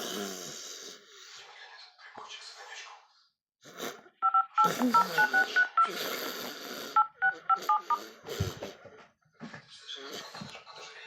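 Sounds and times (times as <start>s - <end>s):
phone keypad dialing beeps: 4.2s - 6.0s, 7.0s - 8.0s.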